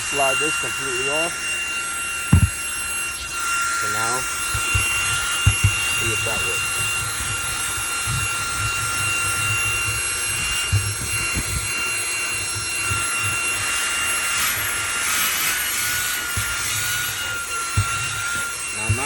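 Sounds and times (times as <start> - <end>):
handheld vacuum whining: 0.0 - 19.0
nozzle knocking against floor: 2.3 - 2.6, 4.4 - 6.0, 17.7 - 19.0.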